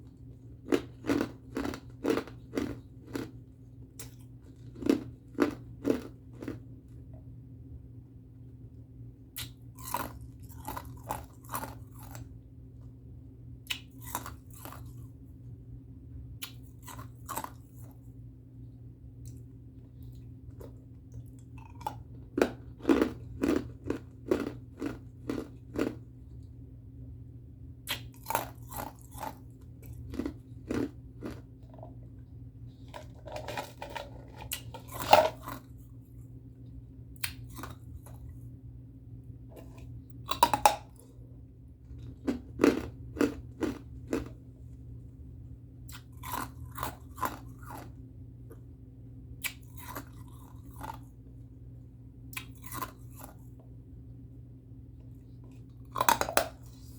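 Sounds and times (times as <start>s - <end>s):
ice crunching while chewed: 0.0s - 6.7s, 9.4s - 12.3s, 13.7s - 15.1s, 16.4s - 18.0s, 19.3s - 26.1s, 27.9s - 32.0s, 32.7s - 35.8s, 37.2s - 38.4s, 39.5s - 41.2s, 41.8s - 44.4s, 45.9s - 48.0s, 49.4s - 51.1s, 52.3s - 53.6s, 55.4s - 56.9s
faint low hum: 0.0s - 56.9s.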